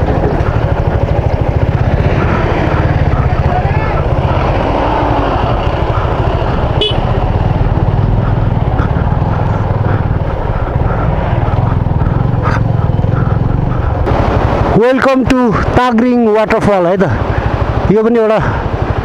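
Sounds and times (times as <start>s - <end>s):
motorcycle engine running: 0.0s - 19.0s
rushing noise: 13.5s - 16.0s.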